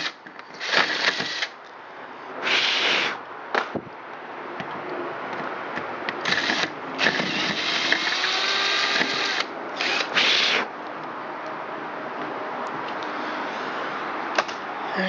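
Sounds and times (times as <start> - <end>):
drill whine: 6.2 - 10.7
hole saw drilling through metal: 6.2 - 10.7.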